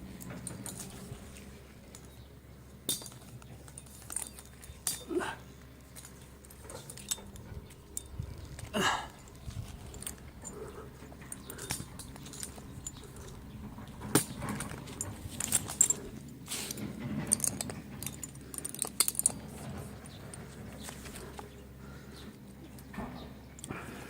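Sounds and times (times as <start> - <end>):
rustles: 0.0 - 24.0
light clinks: 2.9 - 21.8.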